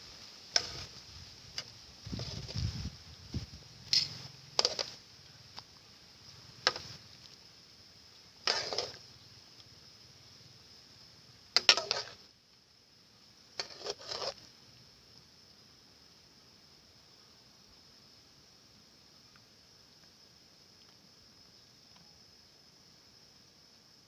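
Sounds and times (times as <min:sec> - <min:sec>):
faint high-pitched hiss: 0:00.0 - 0:24.0
food preparation scrapes and knocks: 0:00.6 - 0:00.9, 0:04.0 - 0:05.0, 0:08.4 - 0:09.0, 0:11.6 - 0:12.2, 0:13.6 - 0:14.4.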